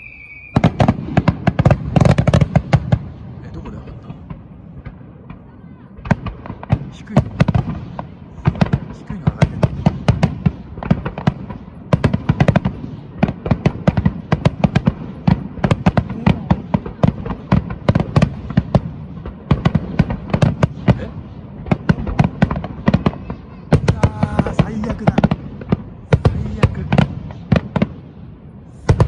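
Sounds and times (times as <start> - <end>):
fireworks sharp bangs: 0.0 - 29.0
rumble of echoing booms: 23.7 - 29.0.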